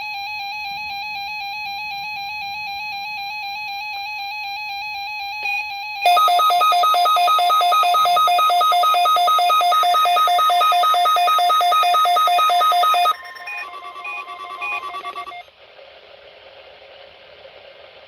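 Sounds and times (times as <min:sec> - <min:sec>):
two-tone alarm beeping: 0:06.1 - 0:15.4.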